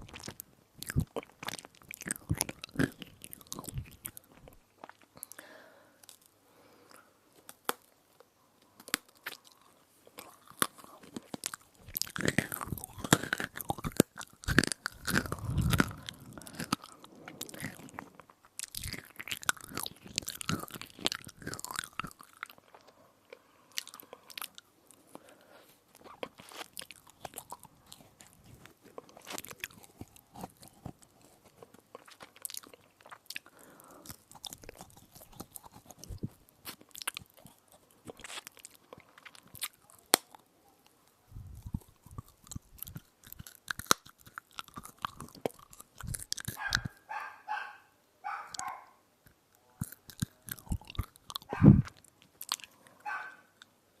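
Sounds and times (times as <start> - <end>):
crunching edible spoon: 0.0 - 5.4, 8.8 - 22.9, 23.7 - 25.3, 26.0 - 40.4, 41.4 - 47.0, 49.3 - 52.8.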